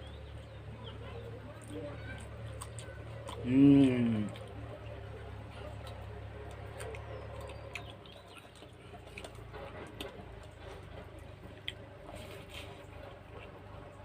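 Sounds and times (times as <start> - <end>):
wet chewing clicks and smacks: 0.0 - 14.0.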